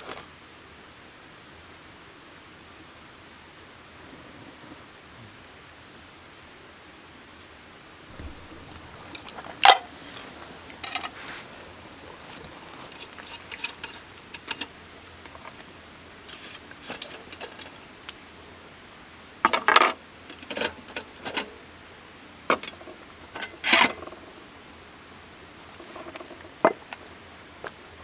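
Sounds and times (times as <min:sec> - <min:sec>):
dishes and utensils clinking: 0:08.1 - 0:14.7.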